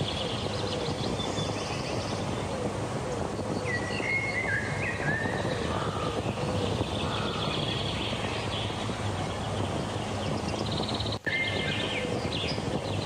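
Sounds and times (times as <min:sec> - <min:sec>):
whistled animal calls: 0:03.6 - 0:07.8, 0:11.2 - 0:12.6.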